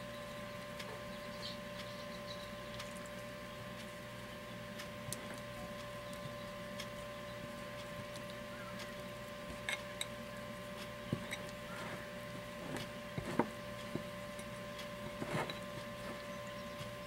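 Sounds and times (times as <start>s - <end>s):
steady appliance hum: 0.0s - 17.0s
breadcrumb coating rustles and taps: 10.8s - 17.0s.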